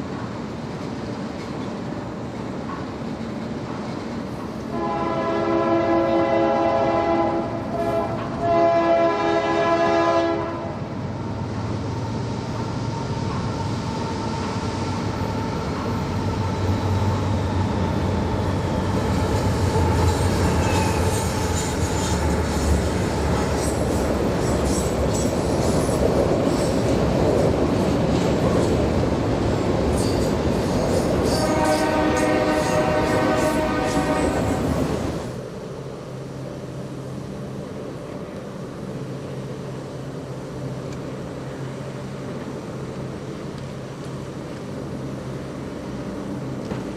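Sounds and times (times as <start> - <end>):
rail cars and wheels clattering: 0.0 - 46.9
locomotive horn blasts: 4.7 - 10.8, 31.3 - 34.6.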